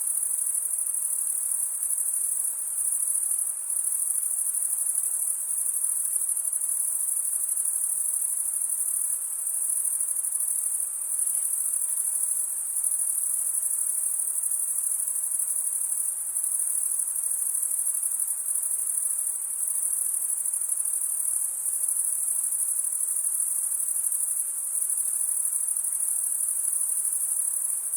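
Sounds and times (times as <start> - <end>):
insect chorus drone: 0.0 - 27.9.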